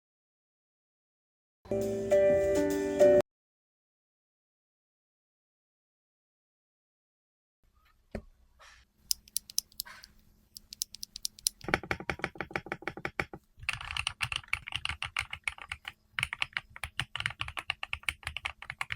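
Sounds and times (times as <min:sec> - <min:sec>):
typing on mechanical keyboard: 0:10.6 - 0:18.9.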